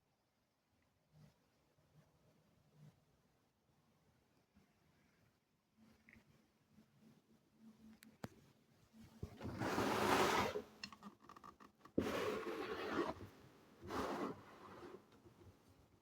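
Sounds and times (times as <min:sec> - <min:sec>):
rubbing and scraping: 0:12.0 - 0:15.2.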